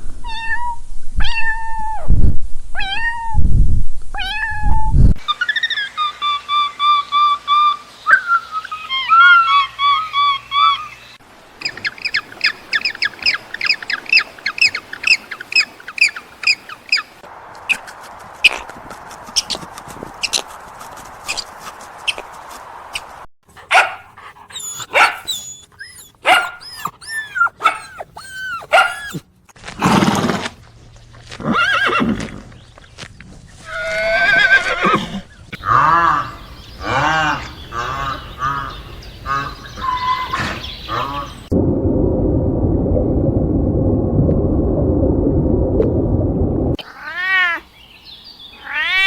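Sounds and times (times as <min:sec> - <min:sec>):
horse whinnying: 0:24.4 - 0:29.2, 0:31.4 - 0:32.2, 0:33.7 - 0:35.2.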